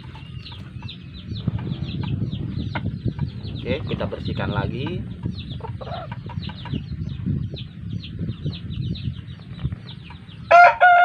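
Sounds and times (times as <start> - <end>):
chicks peeping: 0.0 - 11.0
loud rooster crow: 10.5 - 11.0.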